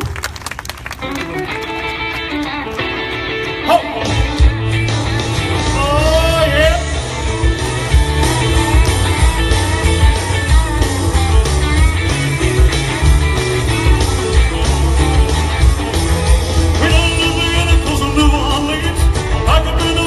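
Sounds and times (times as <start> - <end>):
bass: 0.0 - 20.0
electric guitar: 0.0 - 20.0
steady drum beat: 4.2 - 20.0.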